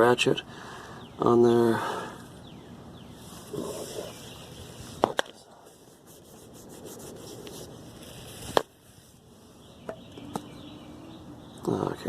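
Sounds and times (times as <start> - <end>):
hands rubbing and scraping: 3.2 - 9.2.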